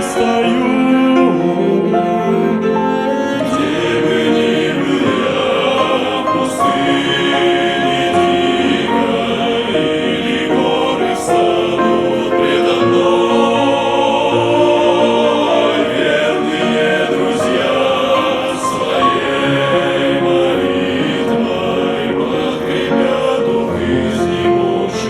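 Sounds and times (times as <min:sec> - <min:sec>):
choir singing: 0:00.0 - 0:25.0.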